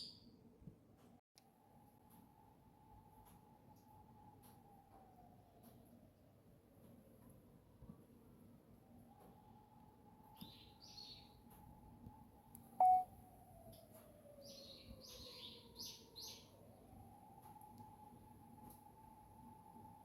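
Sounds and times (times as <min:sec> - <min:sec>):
faint siren wailing: 0:01.4 - 0:20.0
small birds chirping: 0:10.3 - 0:11.4, 0:14.4 - 0:16.6
sharp click-beep: 0:12.8 - 0:13.1.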